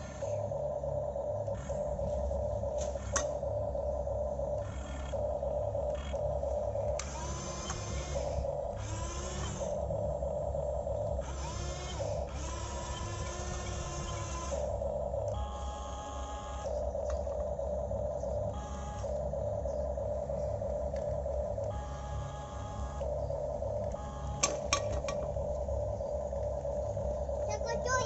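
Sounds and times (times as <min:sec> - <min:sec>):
electric gear motors whining: 0:00.0 - 0:28.0
low rumble: 0:00.0 - 0:28.0
sharp clicks: 0:23.8 - 0:25.6.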